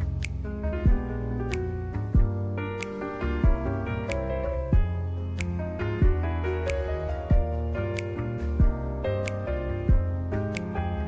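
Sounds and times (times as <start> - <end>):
soft instrumental music: 0.0 - 11.0
low kick drum thumping: 0.8 - 1.2, 2.2 - 2.5, 3.4 - 3.7, 4.7 - 5.0, 6.0 - 6.3, 7.3 - 7.6, 8.6 - 8.9, 9.9 - 10.2.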